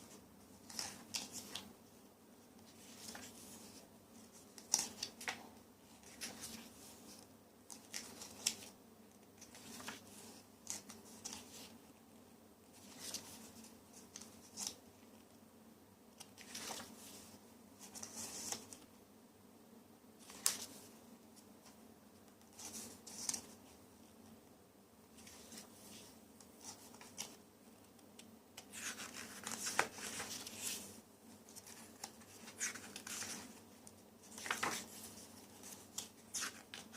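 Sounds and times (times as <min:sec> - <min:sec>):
paper rustling: 0:02.7 - 0:05.4, 0:09.4 - 0:11.7, 0:16.2 - 0:18.8, 0:28.6 - 0:36.9.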